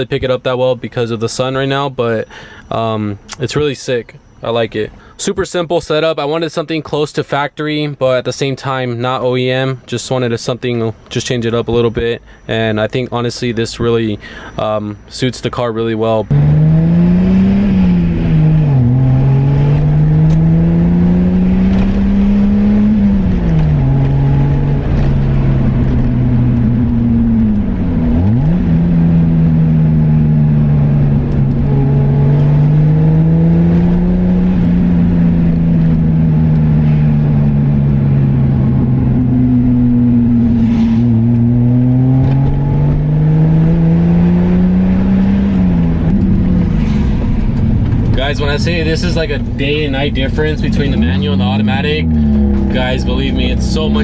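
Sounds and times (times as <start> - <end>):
road and wind noise: 0.0 - 54.0
car engine shifting gears: 15.8 - 54.0.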